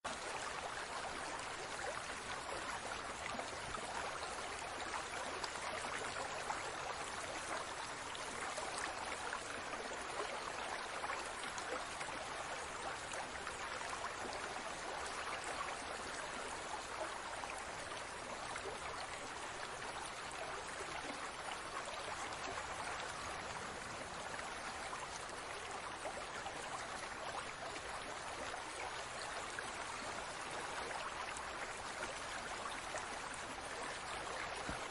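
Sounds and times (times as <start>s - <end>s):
aquarium water bubbling: 0.1s - 34.9s.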